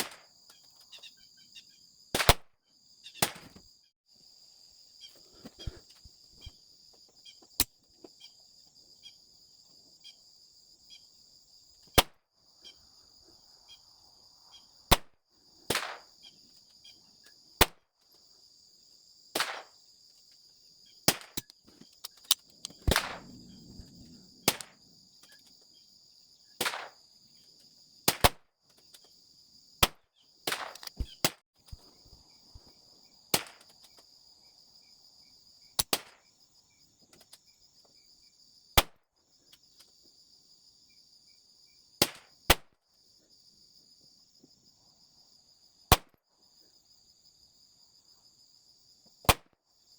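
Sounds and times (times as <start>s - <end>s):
insects buzzing: 0.0s - 49.9s
pistol shots: 3.2s - 3.5s, 15.7s - 16.1s, 22.7s - 23.8s, 24.4s - 24.8s.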